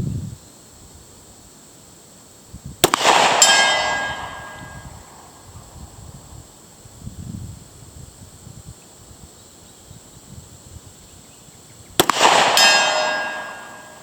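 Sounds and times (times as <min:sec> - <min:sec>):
pistol shot: 0:02.8 - 0:04.8, 0:12.0 - 0:14.0
bullet clanging on steel target: 0:03.4 - 0:04.8, 0:12.0 - 0:14.0.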